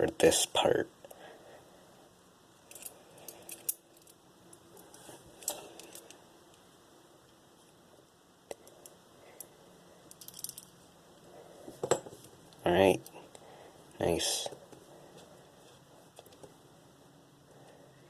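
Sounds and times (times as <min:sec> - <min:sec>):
small metal parts clicking: 0:02.6 - 0:04.2, 0:04.8 - 0:06.2, 0:10.1 - 0:10.8.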